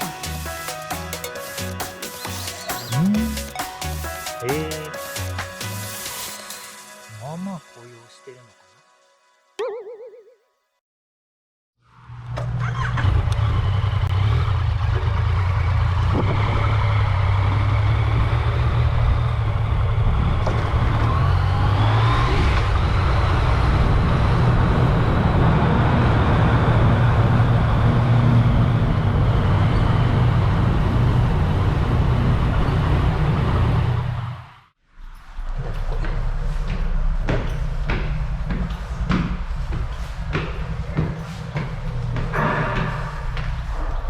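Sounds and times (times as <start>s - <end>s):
road and air noise: 13.3s - 44.0s.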